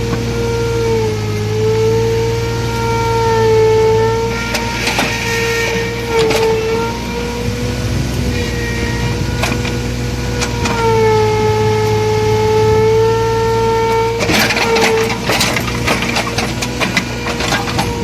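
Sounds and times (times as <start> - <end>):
diesel engine humming: 0.0 - 18.0
hydraulic whine: 0.0 - 18.0
sharp metallic clanks: 4.2 - 12.5, 13.8 - 18.0.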